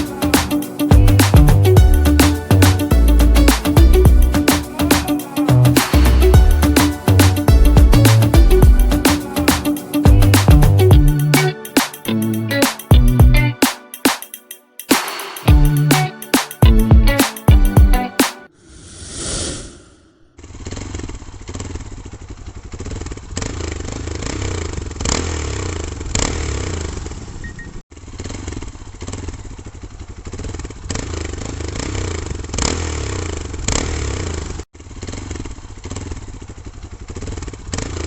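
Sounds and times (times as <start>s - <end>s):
motorcycle engine revving: 20.4s - 38.0s.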